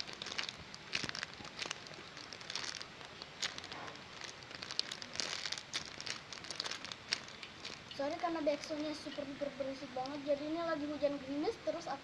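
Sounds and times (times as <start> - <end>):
light drizzle pattering: 0.0 - 11.9.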